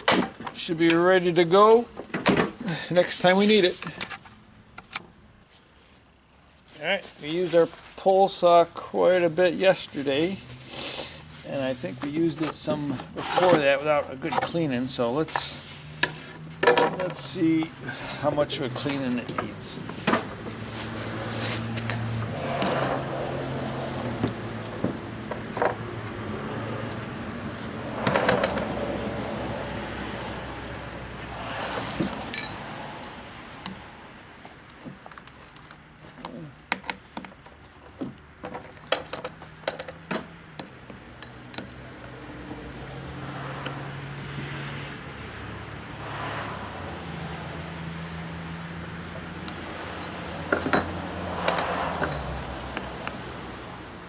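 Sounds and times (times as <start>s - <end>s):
hand tools clinking on metal: 32.0s - 32.6s, 41.2s - 41.8s.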